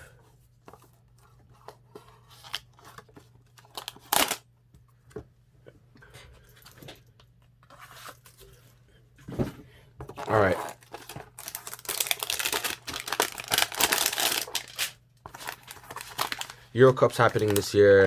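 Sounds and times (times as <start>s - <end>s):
knife scraping packaging: 10.2s - 16.6s
packaging tearing rip: 11.4s - 16.5s.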